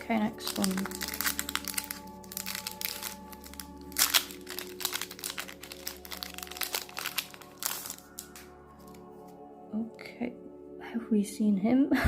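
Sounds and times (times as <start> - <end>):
plastic wrapper crinkling: 0.0 - 9.4
soft background music: 0.0 - 12.0.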